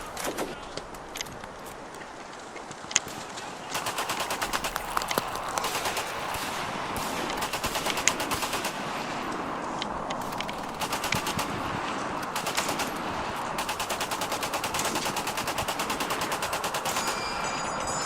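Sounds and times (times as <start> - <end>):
automatic gunfire bursts: 3.1 - 9.5, 10.1 - 17.3.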